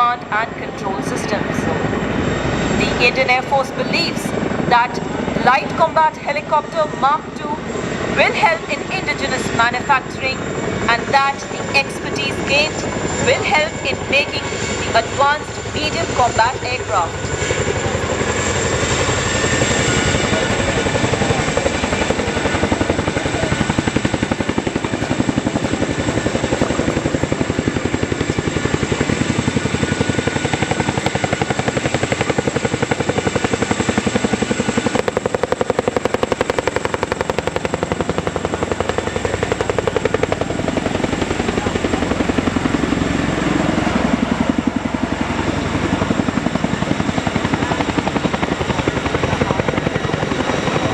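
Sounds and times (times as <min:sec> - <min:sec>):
helicopter rotor chopping: 0:00.0 - 0:50.9.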